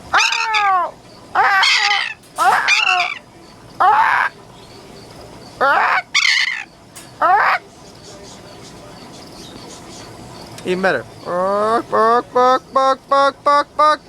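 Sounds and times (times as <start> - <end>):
parrot squawking: 0.1 - 4.4, 5.6 - 7.8.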